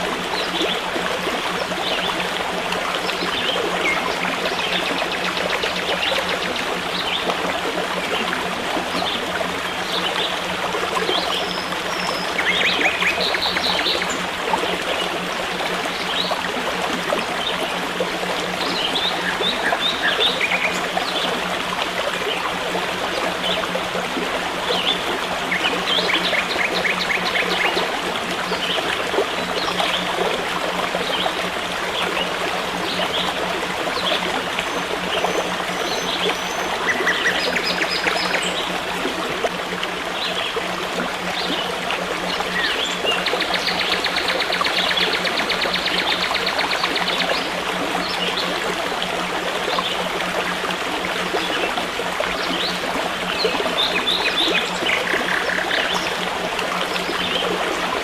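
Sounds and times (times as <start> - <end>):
stream flowing: 0.0 - 58.0
birds trilling: 11.5 - 14.2, 53.9 - 56.2.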